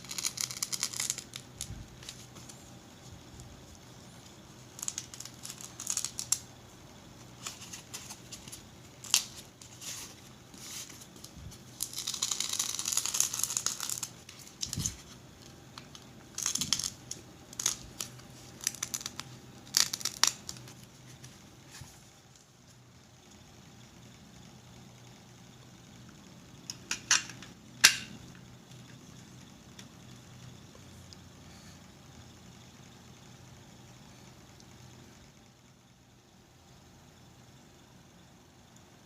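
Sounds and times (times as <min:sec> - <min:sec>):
packaging crinkling and rustling: 0:07.3 - 0:22.4.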